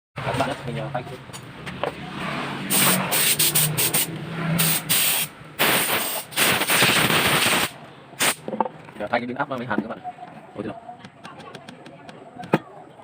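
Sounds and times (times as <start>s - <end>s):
welding arc crackling: 2.7s - 8.4s.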